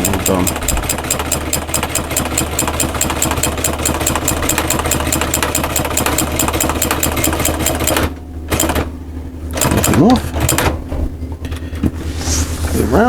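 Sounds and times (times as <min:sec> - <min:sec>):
sewing machine stitching: 0:09.6 - 0:10.7.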